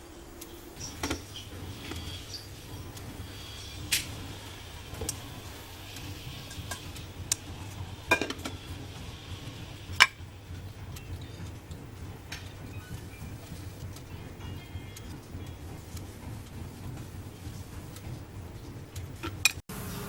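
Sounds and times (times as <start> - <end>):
utensils and dishes clinking: 0.8 - 10.2.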